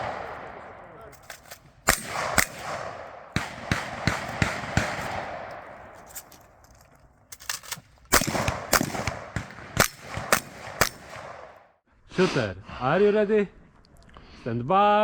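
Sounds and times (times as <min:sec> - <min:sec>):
shotgun shots: 0:00.0 - 0:06.1, 0:07.6 - 0:11.7.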